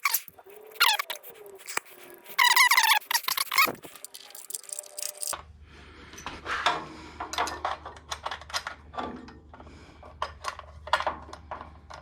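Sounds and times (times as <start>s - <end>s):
metal tools clinking: 0.0s - 5.4s.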